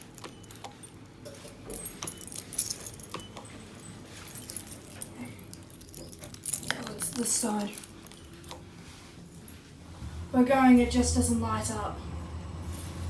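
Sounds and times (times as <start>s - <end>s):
keys jangling: 0.0s - 8.6s.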